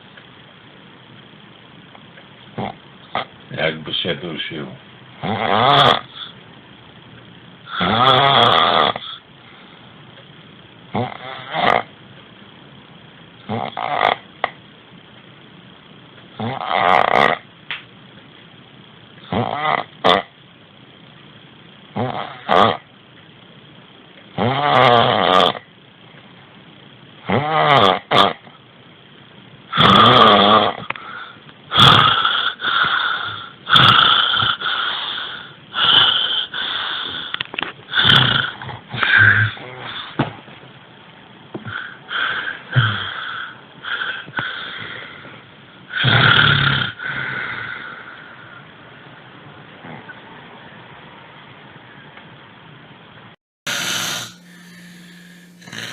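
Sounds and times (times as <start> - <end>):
person snoring: 5.2 - 6.4, 7.7 - 9.2, 11.0 - 11.9, 13.5 - 14.2, 16.4 - 17.4, 24.4 - 25.6, 29.7 - 37.3, 37.9 - 40.2, 41.7 - 45.1, 45.9 - 48.0, 53.7 - 55.9.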